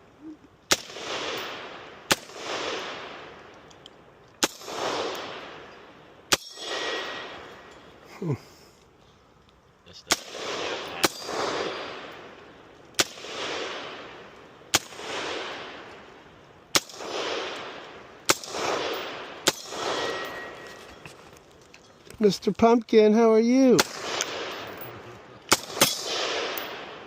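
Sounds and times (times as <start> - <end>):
gunshots with rolling echo: 0.7 - 3.6, 4.4 - 7.8, 10.0 - 20.7, 23.2 - 27.0.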